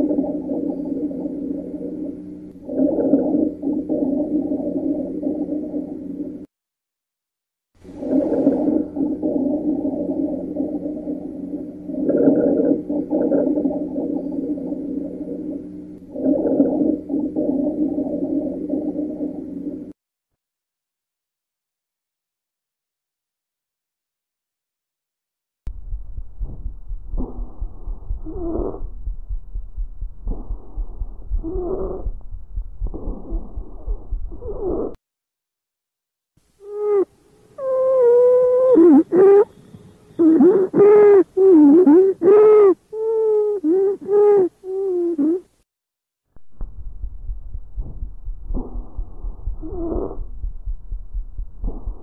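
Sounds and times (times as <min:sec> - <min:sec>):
lung sounds through stethoscope: 0:00.0 - 0:06.5, 0:07.8 - 0:20.0, 0:25.7 - 0:35.0, 0:46.4 - 0:52.0
dull low thumps: 0:25.7 - 0:35.0, 0:46.4 - 0:52.0
breath airflow with wheeze: 0:27.2 - 0:29.1, 0:30.3 - 0:35.0, 0:47.8 - 0:50.8
wheezing lung sounds: 0:31.4 - 0:32.1, 0:48.6 - 0:50.3.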